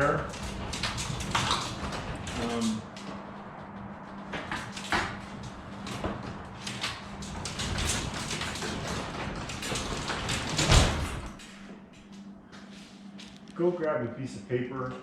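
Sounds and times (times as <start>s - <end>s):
garage door rollers clicking: 0.0s - 11.5s.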